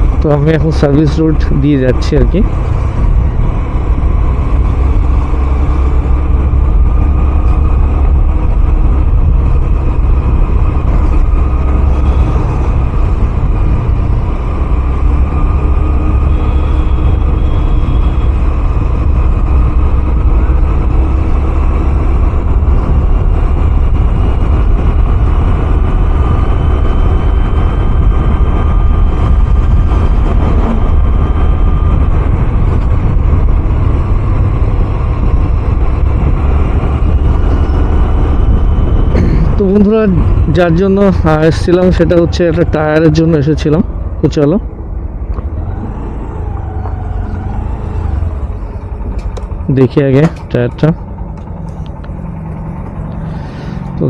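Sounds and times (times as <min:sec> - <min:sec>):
wind rumble on microphone: 0:00.0 - 0:54.0
scooter engine running: 0:45.0 - 0:54.0.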